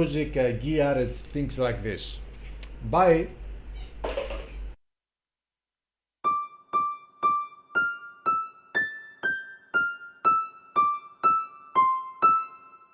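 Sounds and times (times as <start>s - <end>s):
keyboard playing simple melody: 6.2s - 12.9s.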